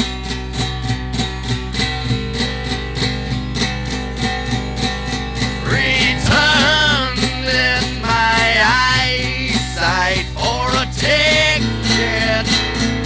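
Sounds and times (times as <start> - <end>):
strummed guitar: 0.0 - 13.0
sustained bass notes: 3.2 - 13.0
person singing: 5.7 - 12.6.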